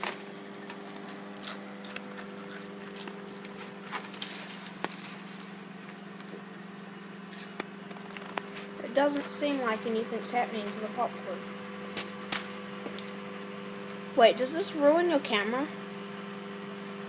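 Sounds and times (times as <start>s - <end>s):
crisp clicks and crunches: 0.0s - 6.5s
microwave oven humming: 0.0s - 17.0s.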